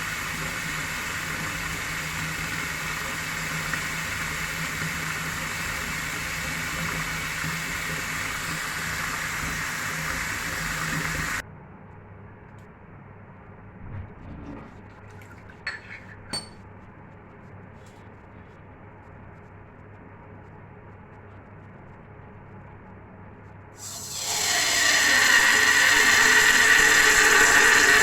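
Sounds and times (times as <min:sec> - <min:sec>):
water rushing down a drain: 0:00.0 - 0:11.4, 0:23.8 - 0:28.0
faint water: 0:14.7 - 0:15.8.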